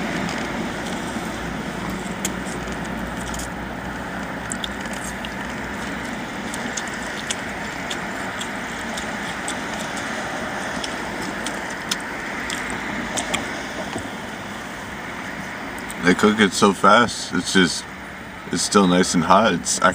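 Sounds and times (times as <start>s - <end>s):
faint ticks and crinkles: 0.0s - 14.8s
car cabin hum: 0.0s - 19.9s.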